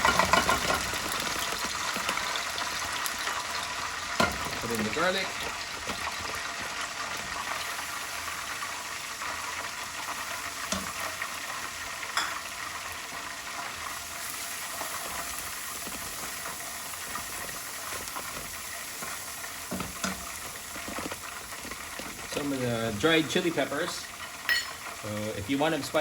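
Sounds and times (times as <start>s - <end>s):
garlic sizzling in hot oil: 0.0s - 26.0s
utensil scraping the pan: 14.6s - 25.0s.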